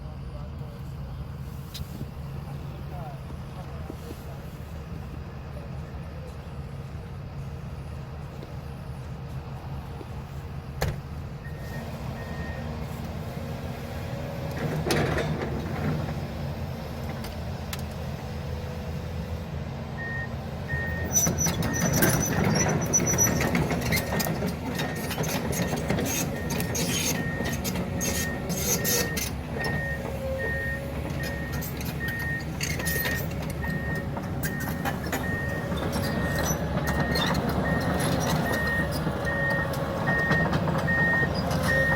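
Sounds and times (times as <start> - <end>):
diesel engine running: 0.0 - 41.9
warning alarm beeping: 25.7 - 41.9.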